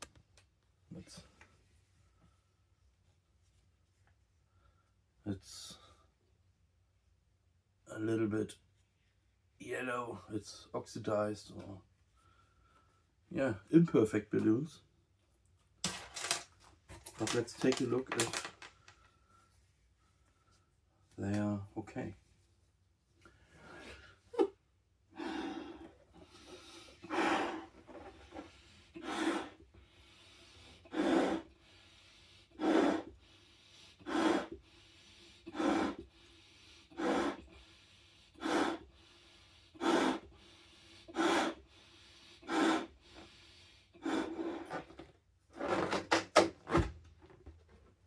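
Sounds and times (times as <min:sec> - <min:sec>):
puffs of breath into balloon: 0:25.2 - 0:44.9.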